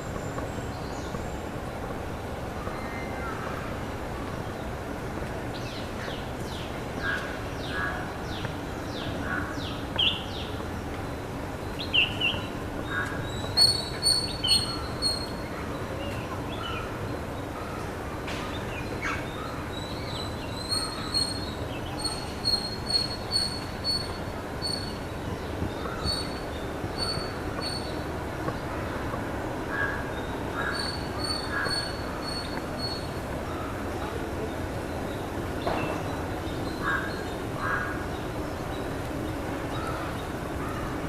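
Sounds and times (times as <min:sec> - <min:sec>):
low background noise: 0:00.0 - 0:41.0
birds chirping and calling: 0:11.7 - 0:15.4, 0:17.6 - 0:28.9.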